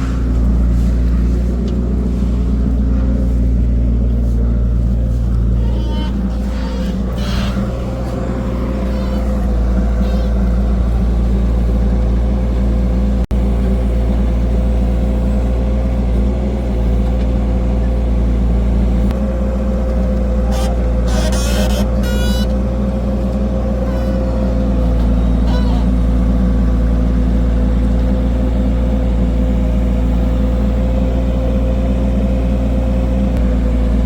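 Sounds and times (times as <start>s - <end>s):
steady whine: 0.0s - 15.4s
heavy diesel engine running: 0.0s - 34.0s.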